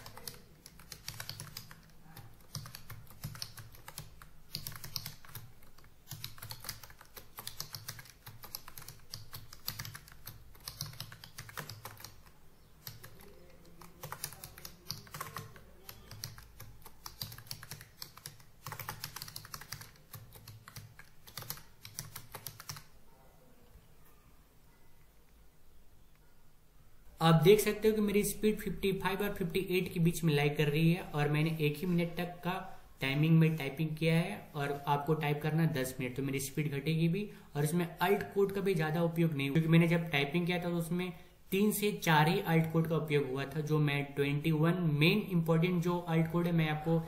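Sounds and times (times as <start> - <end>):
computer keyboard typing: 0.0 - 23.0, 37.6 - 40.6.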